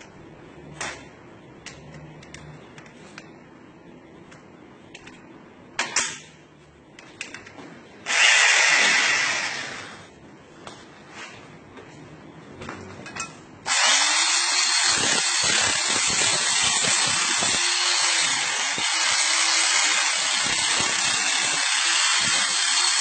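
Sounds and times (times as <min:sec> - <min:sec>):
electric drill cutting sheet metal: 0:08.1 - 0:10.1, 0:13.7 - 0:23.0.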